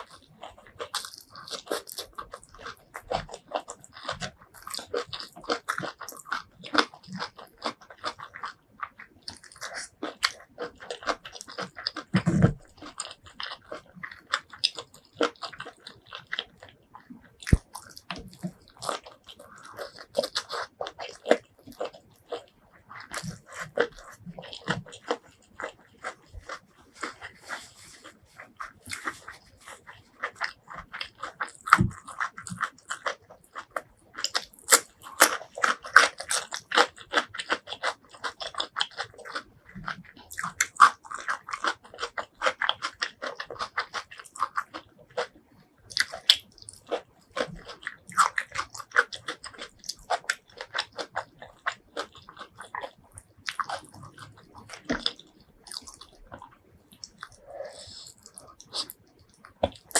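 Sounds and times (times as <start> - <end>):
person chewing and crunching food: 0.0 - 59.9.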